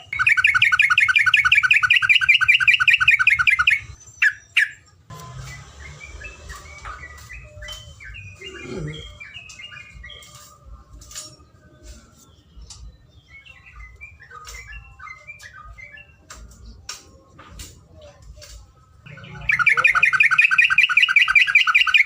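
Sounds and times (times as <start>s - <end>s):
bird chattering chirps: 0.0s - 4.9s, 19.1s - 22.0s.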